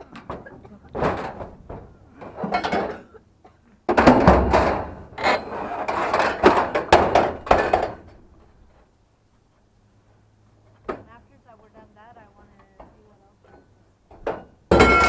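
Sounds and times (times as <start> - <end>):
scrap items thudding and clattering: 0.2 - 3.0, 3.9 - 8.2.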